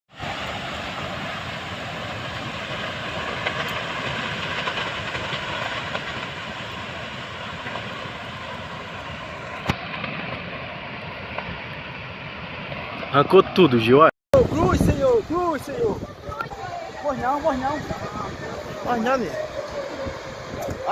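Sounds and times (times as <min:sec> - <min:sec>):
strong storm wind rushing: 0:14.4 - 0:20.9.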